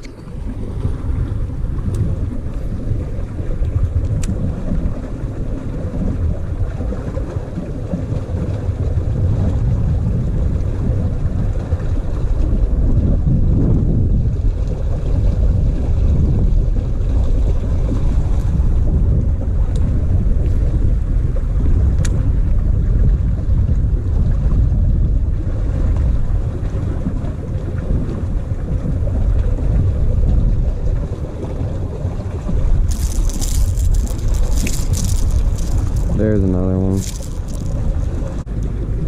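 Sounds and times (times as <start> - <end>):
wind buffeting microphone: 0.0 - 39.0.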